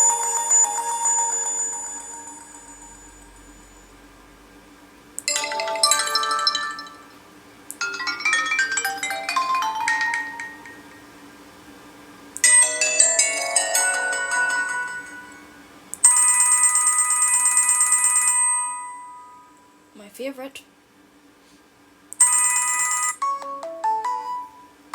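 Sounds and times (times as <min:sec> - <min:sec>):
melodic phone ringtones: 0:00.0 - 0:03.9, 0:05.3 - 0:07.2, 0:07.8 - 0:11.2, 0:12.4 - 0:19.6, 0:22.2 - 0:24.7.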